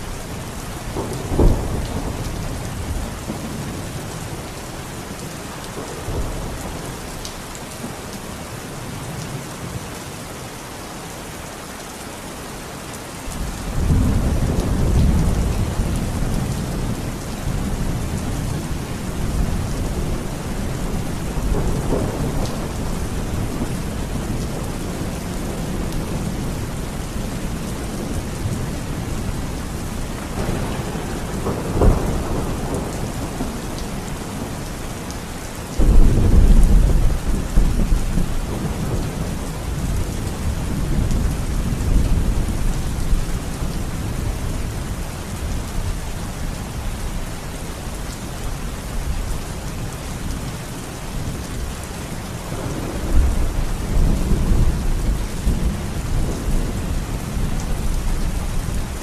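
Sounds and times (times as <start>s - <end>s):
heavy rain falling: 0.0s - 59.0s
thunder cracking and rumbling: 0.9s - 4.0s, 13.3s - 34.7s, 35.8s - 44.3s, 52.4s - 58.7s.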